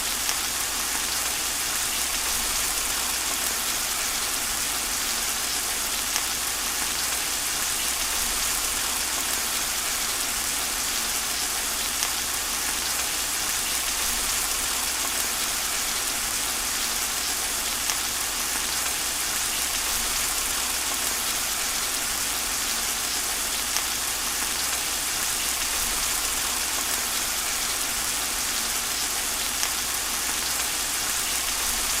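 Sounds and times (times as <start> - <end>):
steady rain falling: 0.0 - 32.0.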